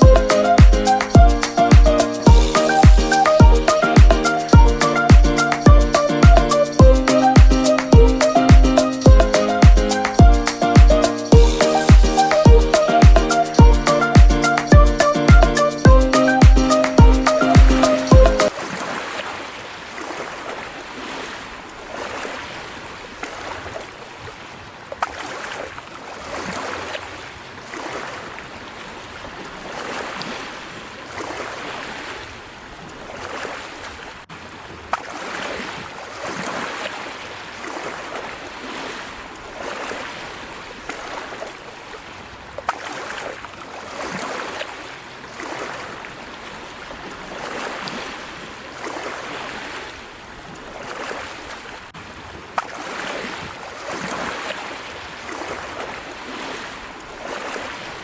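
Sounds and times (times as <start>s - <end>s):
small waves lapping: 18.5s - 58.0s.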